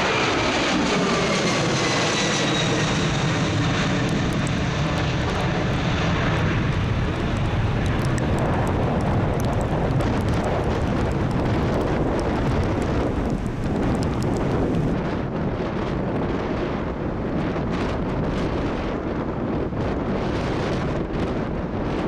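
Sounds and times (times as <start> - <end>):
deep jet rumble: 0.0 - 22.0
jet engine whine: 0.0 - 22.0.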